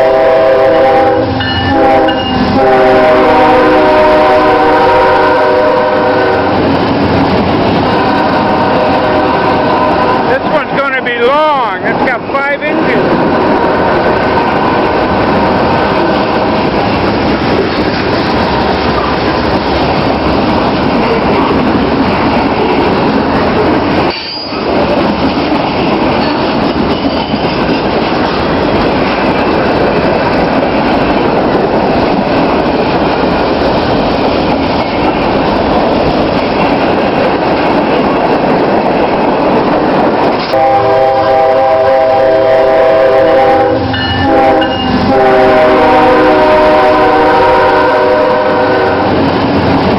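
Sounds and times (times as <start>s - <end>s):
train horn chord: 0.0s - 6.7s, 7.8s - 10.5s, 12.7s - 16.6s, 40.5s - 49.2s
train wheels rushing on rails: 0.0s - 49.9s.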